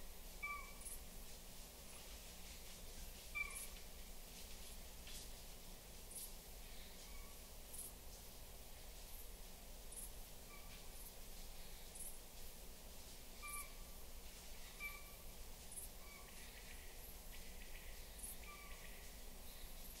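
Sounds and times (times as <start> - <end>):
steady hiss: 0.0 - 20.0
faint high chirps: 13.4 - 13.8.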